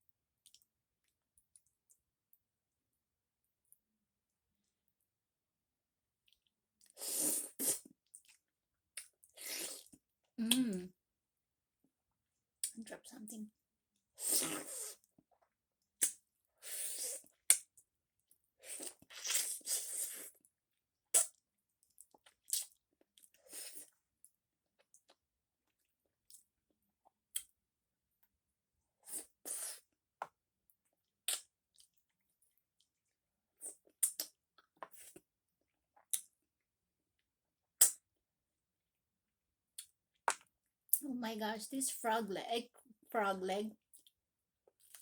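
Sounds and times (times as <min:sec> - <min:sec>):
person chewing food: 0:06.3 - 0:10.7, 0:18.6 - 0:20.5, 0:21.1 - 0:24.0, 0:29.0 - 0:32.2, 0:32.8 - 0:36.4.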